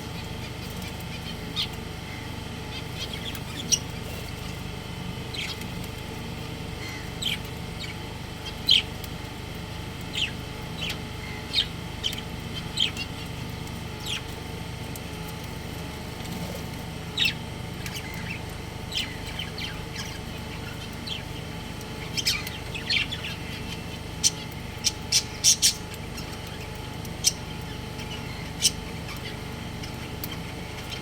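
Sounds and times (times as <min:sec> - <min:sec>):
steady low hum: 0:00.0 - 0:31.0
budgerigars chirping: 0:00.2 - 0:04.2, 0:05.3 - 0:05.8, 0:06.8 - 0:08.9, 0:10.1 - 0:13.3, 0:14.0 - 0:14.3, 0:17.2 - 0:31.0.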